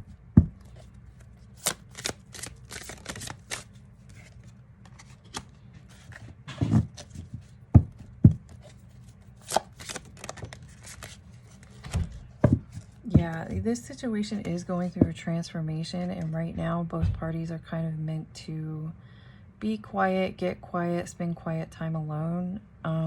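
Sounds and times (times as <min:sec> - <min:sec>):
cards being shuffled: 0:00.4 - 0:13.7
soft thumps: 0:06.5 - 0:08.5, 0:16.6 - 0:17.4.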